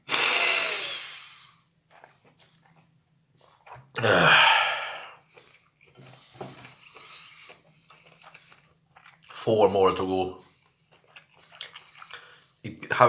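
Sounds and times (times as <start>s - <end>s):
mouth sounds of eating: 0.1s - 13.0s
person huffing loudly: 4.0s - 5.2s.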